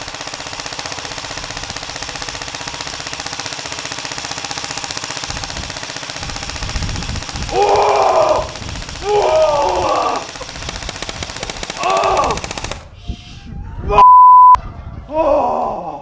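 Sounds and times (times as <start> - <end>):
airsoft rifle firing full auto: 0.0 - 12.9.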